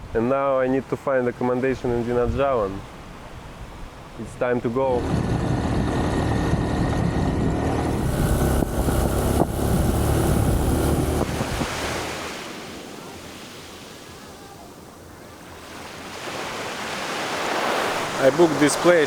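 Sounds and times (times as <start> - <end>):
ocean surf: 0.0 - 19.0
wind rumbling on microphone: 1.9 - 13.4
motor scooter engine: 5.0 - 12.2.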